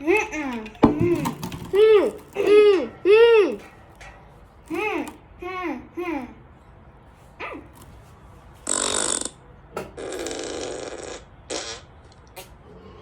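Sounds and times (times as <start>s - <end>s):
fart sound effects: 8.6s - 12.3s.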